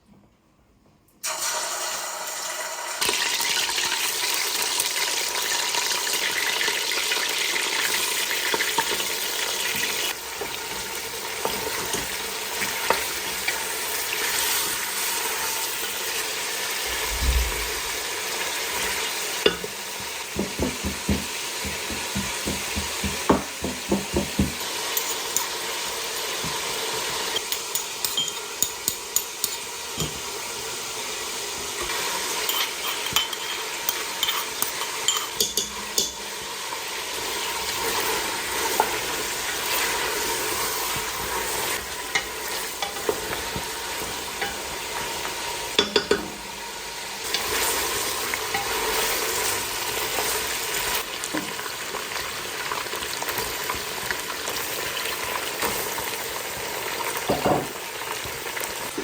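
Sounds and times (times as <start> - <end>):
food sizzling in hot oil: 1.2 - 59.0
metal utensil scraping pan: 24.4 - 30.2, 31.9 - 36.4, 37.9 - 45.1, 47.2 - 50.4.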